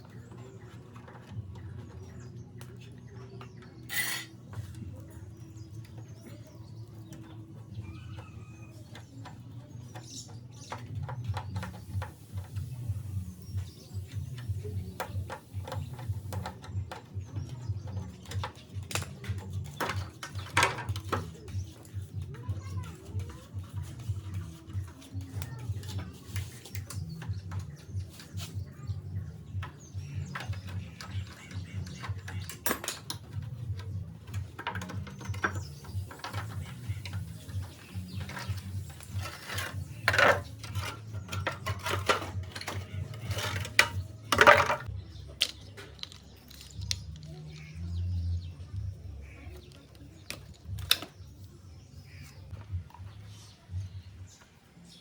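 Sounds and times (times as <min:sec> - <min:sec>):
metal tools clinking: 0:03.8 - 0:04.6, 0:38.0 - 0:47.7.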